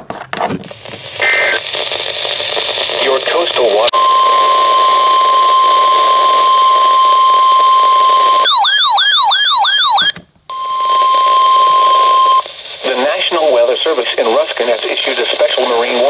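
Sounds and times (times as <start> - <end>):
radio hiss: 0.6 - 8.4, 10.8 - 16.0
steady warning alarm tone: 3.8 - 13.0
warbling electronic alarm: 3.9 - 12.5.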